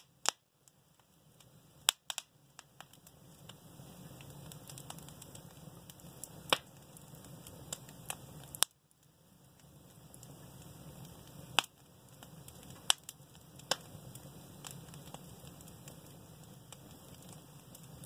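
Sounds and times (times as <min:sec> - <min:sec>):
sharp fire pops: 0:00.0 - 0:18.0
wood fire crackling: 0:00.0 - 0:18.0.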